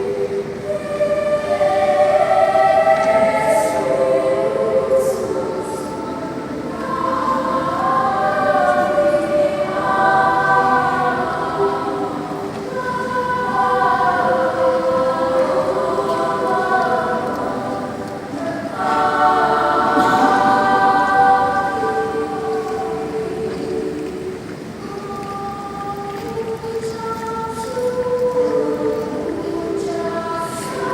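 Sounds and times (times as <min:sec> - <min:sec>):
children's choir singing: 0:00.0 - 0:30.9.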